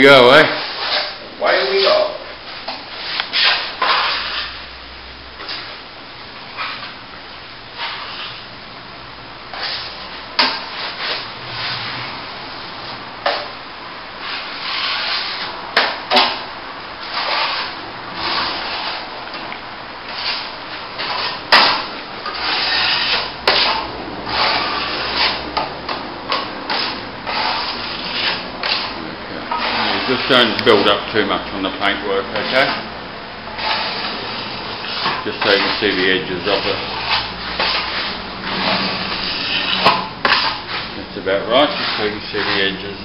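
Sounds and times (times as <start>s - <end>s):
trowel scraping on wall: 0.4s - 2.2s, 3.0s - 4.6s, 7.8s - 8.5s, 9.5s - 12.1s, 14.2s - 16.4s, 17.0s - 19.1s, 20.1s - 31.0s, 32.3s - 32.8s, 33.5s - 43.0s.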